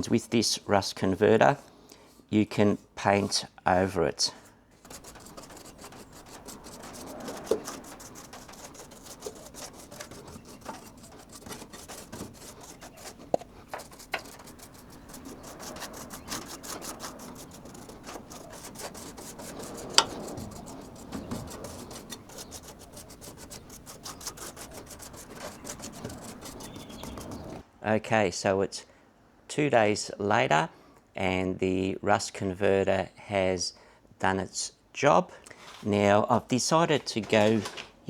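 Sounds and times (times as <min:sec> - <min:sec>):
brush scrubbing metal: 0:04.9 - 0:27.6
sharp knocks: 0:04.9 - 0:27.6.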